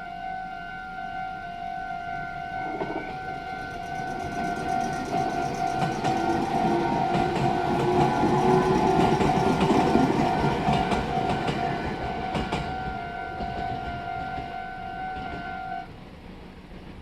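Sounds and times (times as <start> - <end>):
train passing: 0.0 - 17.0
level crossing warning bell: 2.1 - 14.6
wheels clacking over rail joints: 2.6 - 14.6.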